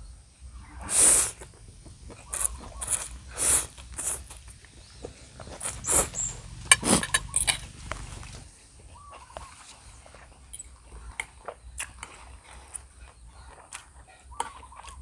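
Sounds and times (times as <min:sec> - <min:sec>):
soft chewing: 0:00.6 - 0:15.0
noodles being slurped: 0:02.1 - 0:04.7, 0:05.4 - 0:07.1.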